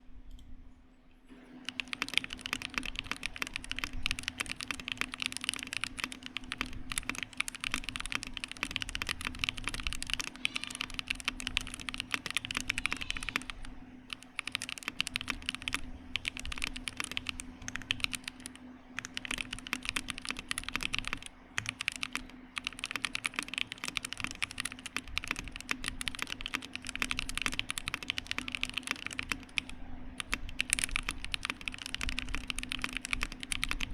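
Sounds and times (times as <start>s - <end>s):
low steady hum: 0.0s - 33.9s
mechanical keyboard typing: 1.5s - 33.9s.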